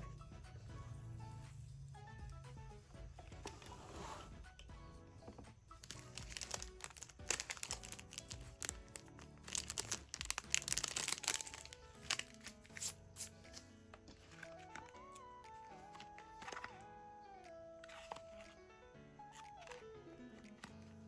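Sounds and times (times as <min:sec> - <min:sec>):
background music: 0:00.0 - 0:21.0
plastic packaging crinkling and tearing: 0:05.8 - 0:16.8, 0:17.8 - 0:18.6, 0:19.3 - 0:20.9.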